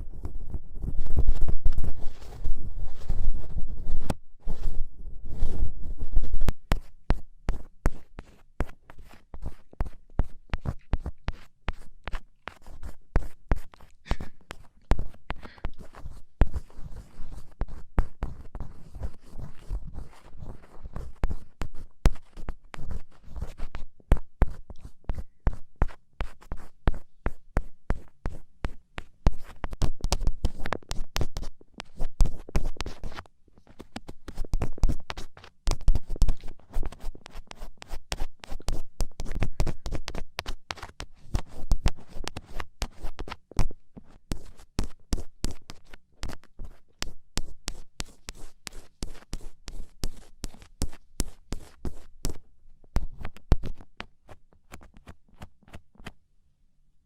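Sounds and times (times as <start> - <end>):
ear pick scratching: 0.0 - 23.8.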